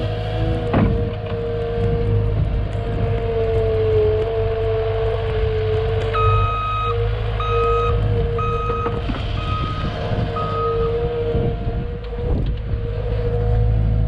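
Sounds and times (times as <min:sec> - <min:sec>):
engine rumble with whine: 0:00.0 - 0:14.0
vehicle backup alarm beeping: 0:06.1 - 0:11.0.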